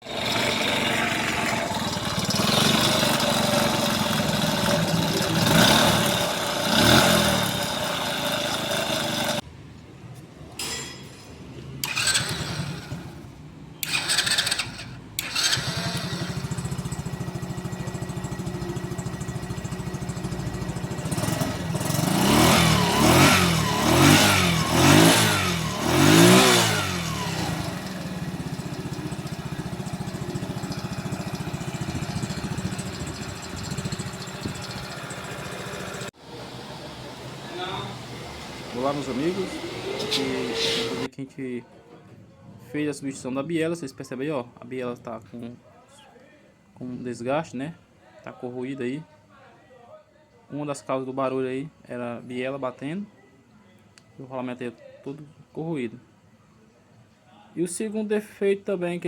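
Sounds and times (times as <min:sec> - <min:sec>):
engine knocking: 0:00.0 - 0:09.4, 0:13.9 - 0:23.2, 0:23.8 - 0:36.1
motorcycle engine revving: 0:00.0 - 0:09.4, 0:11.8 - 0:41.1.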